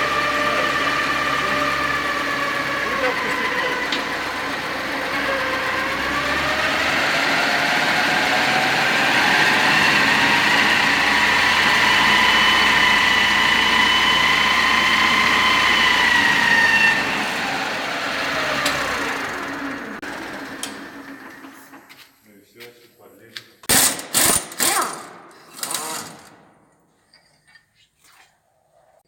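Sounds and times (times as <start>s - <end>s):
machine whine: 0.0s - 21.8s.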